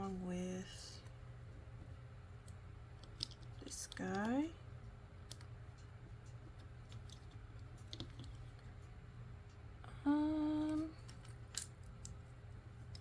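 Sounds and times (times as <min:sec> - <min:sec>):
person humming: 0:09.8 - 0:11.0.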